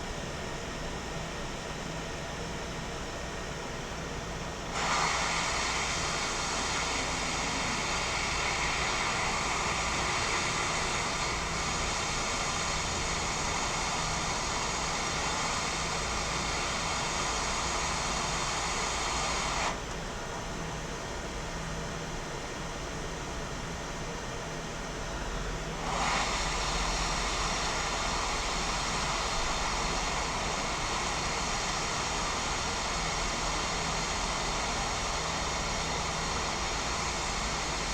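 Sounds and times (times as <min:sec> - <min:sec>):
hot air blower hissing: 0:04.5 - 0:20.3, 0:25.7 - 0:37.9.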